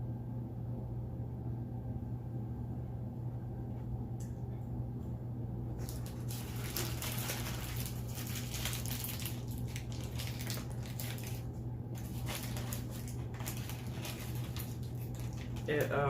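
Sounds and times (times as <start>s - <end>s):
low hum: 0.0s - 16.0s.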